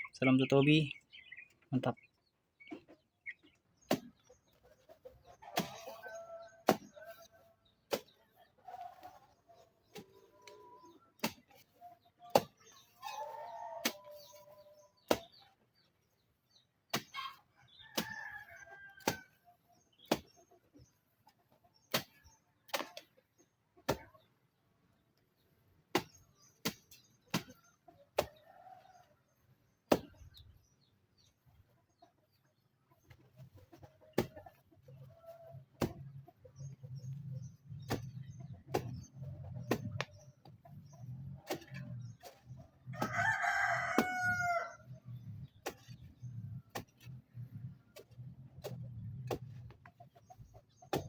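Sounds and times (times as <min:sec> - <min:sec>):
rooster crowing: 0:43.0 - 0:44.8.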